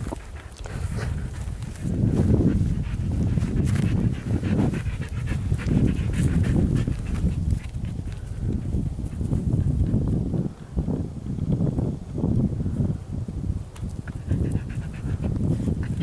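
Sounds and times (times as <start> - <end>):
dog panting: 0.0 - 8.2, 14.1 - 16.0.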